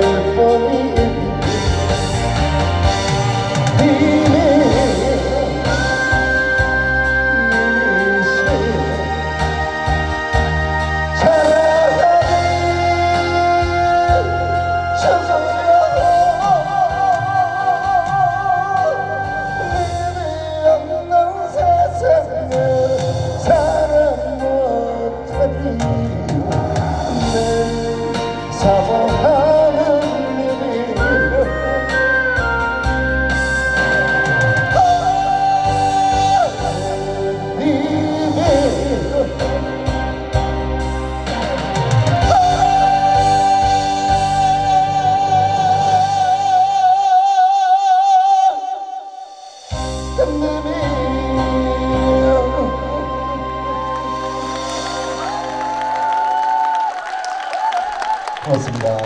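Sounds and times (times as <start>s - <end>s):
trot song music: 0.0s - 46.9s, 49.7s - 59.0s
live band playing: 0.0s - 47.4s, 49.3s - 59.0s
singer holding long note: 50.1s - 59.0s.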